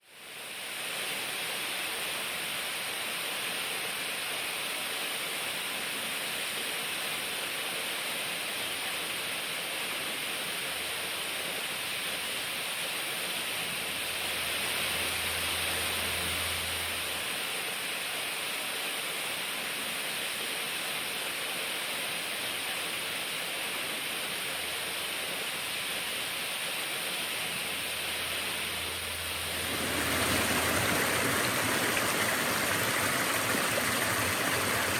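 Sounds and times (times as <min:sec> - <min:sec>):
water rushing: 0:10.8 - 0:18.3, 0:24.6 - 0:34.9.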